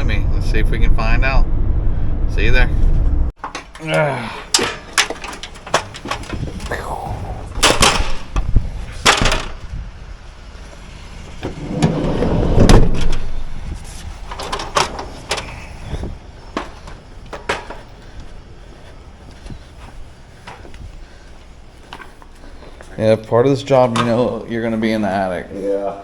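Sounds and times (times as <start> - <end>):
doors opening and shutting: 2.8 - 20.7
rushing swell: 10.9 - 14.3.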